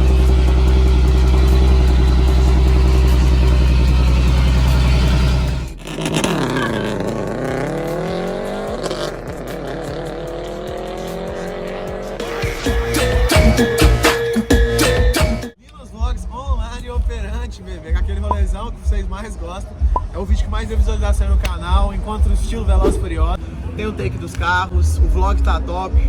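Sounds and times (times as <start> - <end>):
music: 0.0 - 5.7, 7.8 - 17.4
car engine revving: 0.0 - 13.7, 16.7 - 26.0
car engine rumbling: 0.0 - 13.7, 15.6 - 26.0.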